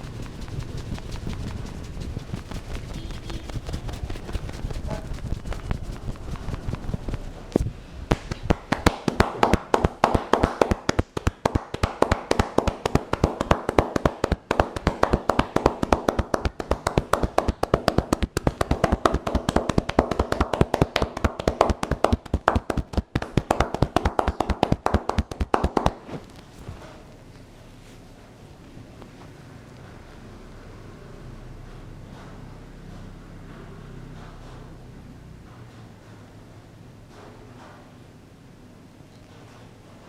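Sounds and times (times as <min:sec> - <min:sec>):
hands slapping head rhythmically: 0:02.3 - 0:07.3, 0:08.1 - 0:26.1.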